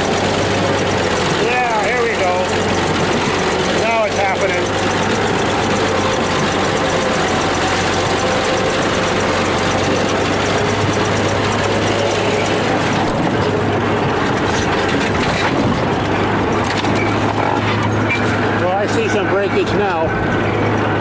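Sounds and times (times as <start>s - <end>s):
diesel engine under load: 0.0s - 21.0s.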